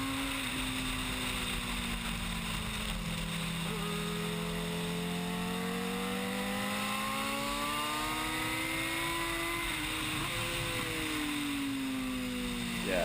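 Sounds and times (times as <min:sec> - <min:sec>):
vehicle engine accelerating: 0:00.0 - 0:13.0.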